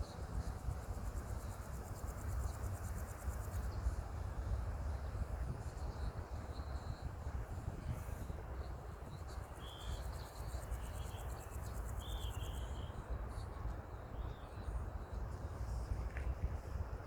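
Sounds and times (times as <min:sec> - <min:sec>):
insect trill: 0:08.7 - 0:12.9.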